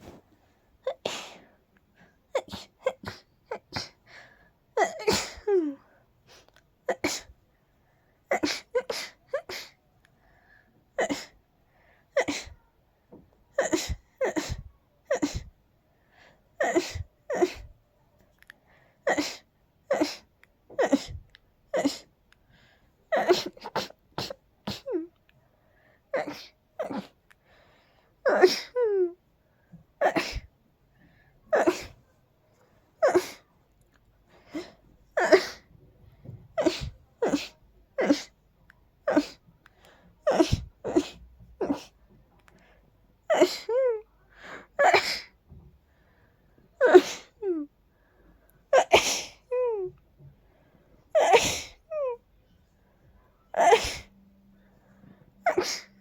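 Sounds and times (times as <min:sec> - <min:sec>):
person sneezing: 0:00.9 - 0:01.6, 0:36.6 - 0:38.4, 0:48.8 - 0:49.5, 0:51.2 - 0:51.8, 0:53.6 - 0:54.1, 0:55.5 - 0:56.0.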